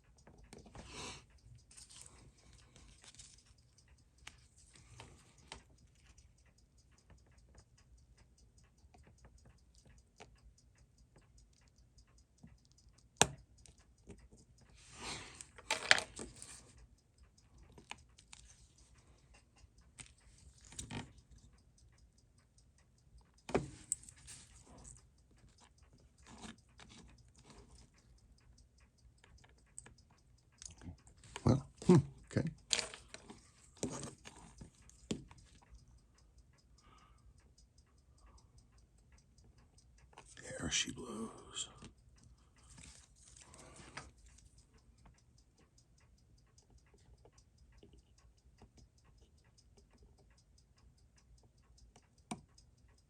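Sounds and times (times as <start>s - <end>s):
fast watch ticking: 0.0s - 53.0s
metal tools clicking and scraping: 32.7s - 34.4s.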